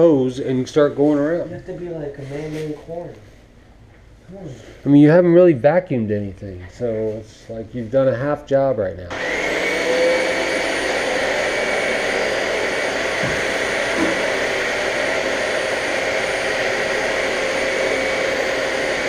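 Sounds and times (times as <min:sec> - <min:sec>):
vacuum cleaner running: 0:09.1 - 0:19.0.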